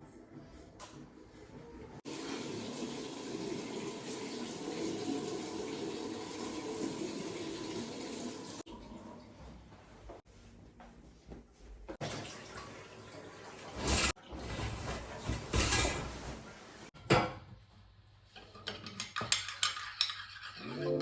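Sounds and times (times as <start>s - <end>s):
tap water running: 2.0s - 9.6s, 12.0s - 16.9s.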